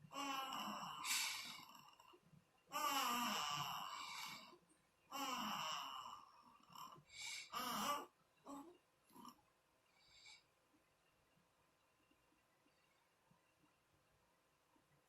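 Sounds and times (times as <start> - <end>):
baby snoring: 0.1 - 2.0, 2.7 - 4.5, 5.1 - 9.3.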